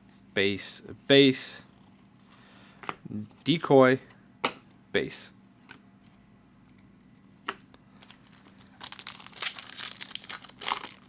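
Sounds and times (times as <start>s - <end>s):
wrapper crinkling and tearing: 8.0s - 11.0s.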